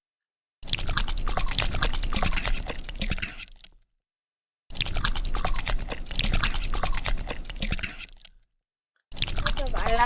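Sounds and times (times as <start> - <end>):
rapid crisp crunching: 0.6 - 3.8, 4.7 - 8.4.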